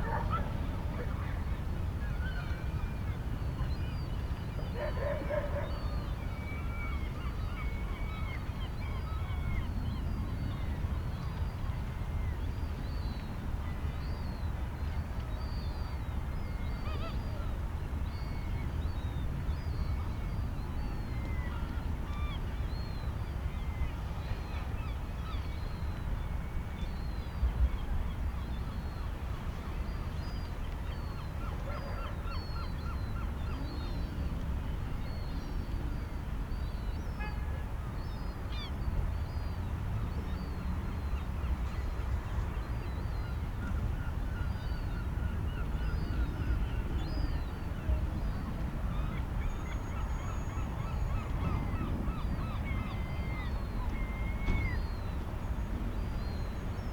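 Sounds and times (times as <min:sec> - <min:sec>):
sea and wind rumble: 0:14.6 - 0:56.9.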